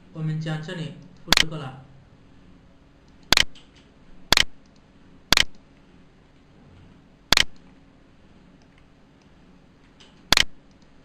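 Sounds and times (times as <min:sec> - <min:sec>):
computer mouse clicking: 0:03.1 - 0:05.6, 0:08.6 - 0:11.0.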